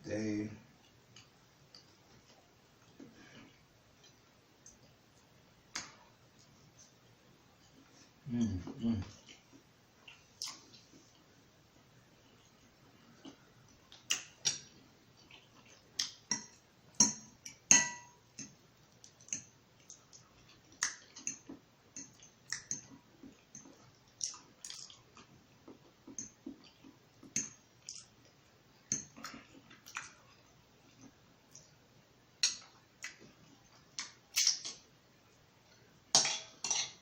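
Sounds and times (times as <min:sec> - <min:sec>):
wet chewing and mouth smacks: 0:09.2 - 0:11.2, 0:12.3 - 0:16.6, 0:18.4 - 0:31.8, 0:32.4 - 0:34.8.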